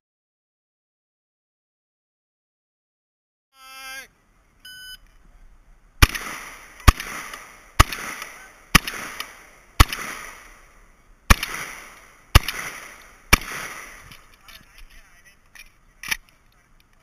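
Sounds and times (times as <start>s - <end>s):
shot timer beep: 4.7s - 5.0s
shotgun shots echoing: 6.0s - 14.4s.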